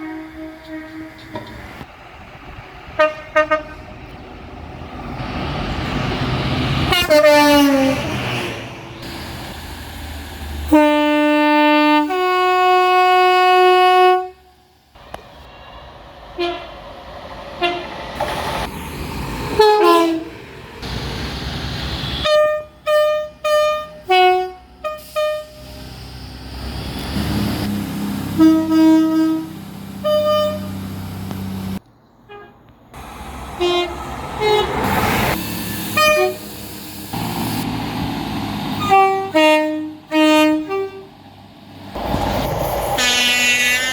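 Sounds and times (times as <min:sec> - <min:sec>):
train horn blasts: 0:00.0 - 0:01.4, 0:03.0 - 0:03.9, 0:06.9 - 0:08.5, 0:10.7 - 0:14.6, 0:16.4 - 0:16.7, 0:17.6 - 0:17.9, 0:19.6 - 0:20.3, 0:22.2 - 0:25.6, 0:28.3 - 0:30.7, 0:33.6 - 0:34.9, 0:35.9 - 0:36.5, 0:38.8 - 0:41.1, 0:43.0 - 0:43.9.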